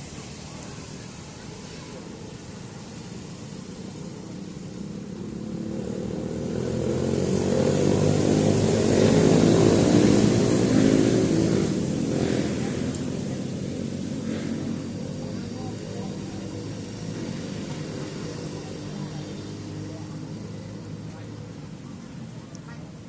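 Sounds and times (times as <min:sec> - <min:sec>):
vehicle engine passing by: 0:00.0 - 0:23.0.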